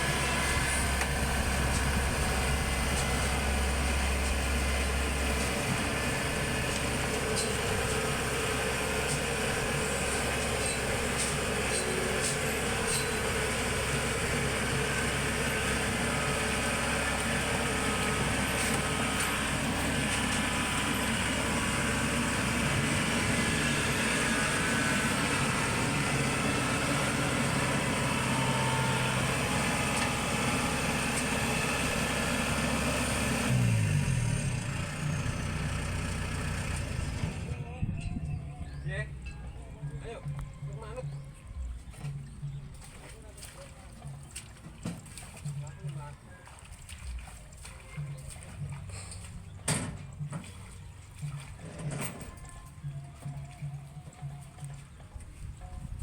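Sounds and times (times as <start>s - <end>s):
combine harvester engine running: 0.0s - 40.5s.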